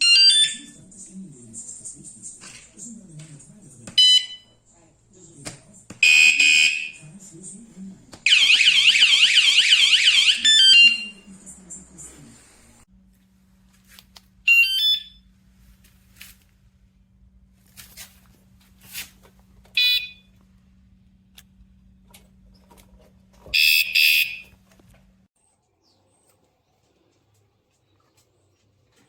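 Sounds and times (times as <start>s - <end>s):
bike alarm chirps and beeps: 4.0s - 4.5s, 6.0s - 7.0s, 8.3s - 11.3s, 14.5s - 15.3s, 19.8s - 20.3s, 23.6s - 24.5s.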